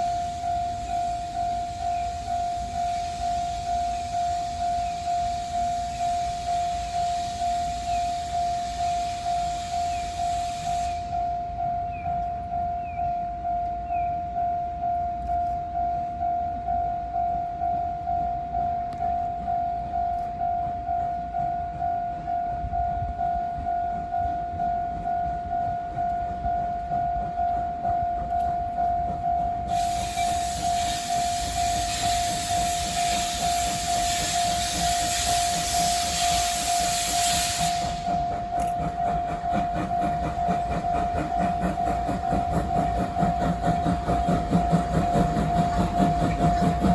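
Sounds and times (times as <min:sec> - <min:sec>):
loud steam hiss: 0:00.0 - 0:11.3, 0:29.6 - 0:46.9
steam locomotive wheel noise: 0:00.0 - 0:46.9.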